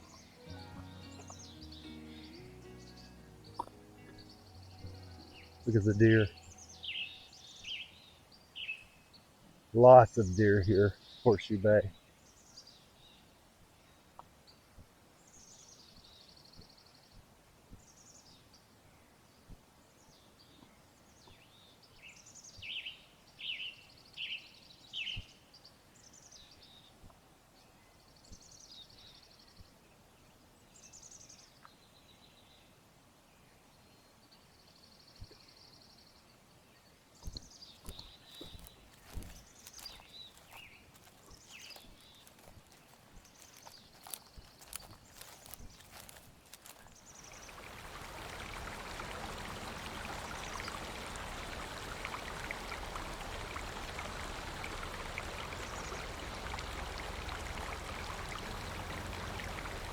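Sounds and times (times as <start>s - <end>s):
small birds chirping: 0.0s - 13.3s, 36.8s - 59.9s
faint knocks and crunches: 37.2s - 59.9s
buzzy bird trills: 46.7s - 59.9s.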